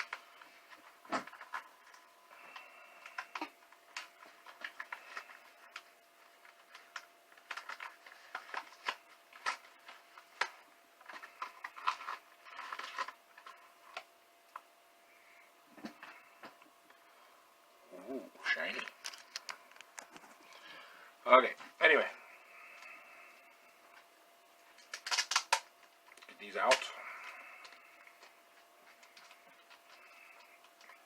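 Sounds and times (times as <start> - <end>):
packaging crinkling: 0.0 - 14.6, 18.7 - 20.7, 24.6 - 31.0.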